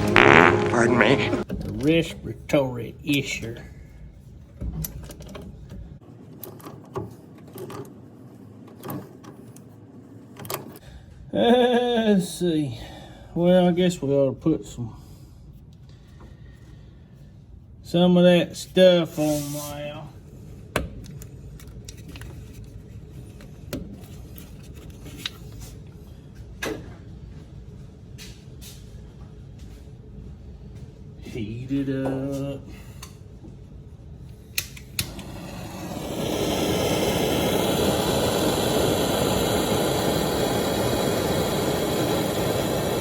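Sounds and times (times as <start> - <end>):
steady low hum: 27.2 - 43.0.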